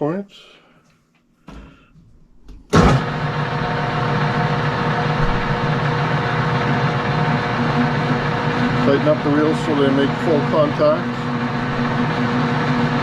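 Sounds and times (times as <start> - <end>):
metal lathe running: 3.0 - 13.0.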